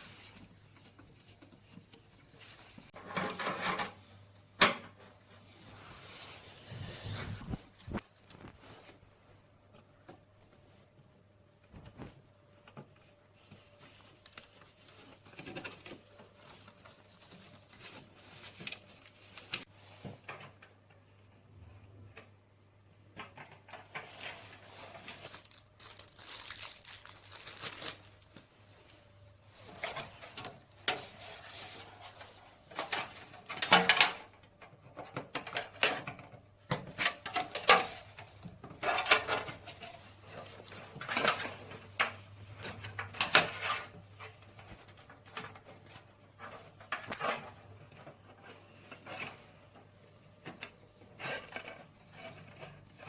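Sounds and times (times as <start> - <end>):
plastic packaging rustling: 23.7 - 34.3.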